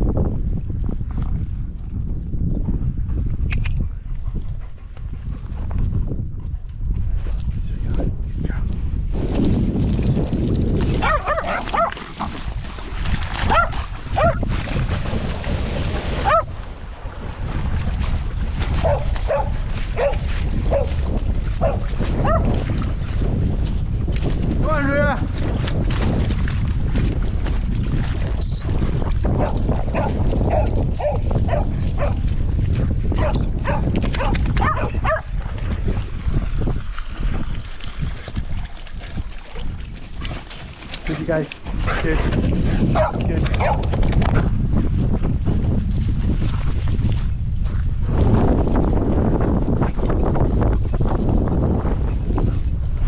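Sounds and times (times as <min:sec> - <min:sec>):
low wind noise: 0:00.0 - 0:53.0
dog barking and yelping: 0:11.0 - 0:12.0, 0:13.5 - 0:14.4, 0:16.2 - 0:16.5, 0:18.8 - 0:20.9, 0:21.6 - 0:22.5, 0:29.4 - 0:32.2, 0:33.2 - 0:35.3.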